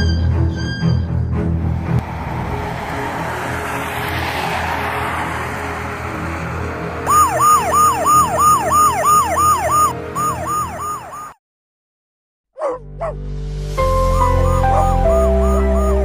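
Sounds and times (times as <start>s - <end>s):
siren yelping: 7.1s - 11.4s, 13.9s - 16.0s.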